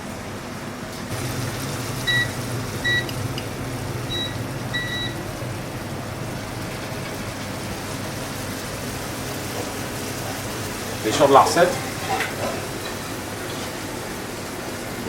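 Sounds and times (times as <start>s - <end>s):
kitchen background hum: 0.0s - 15.0s
short electronic beeps: 4.1s - 5.2s.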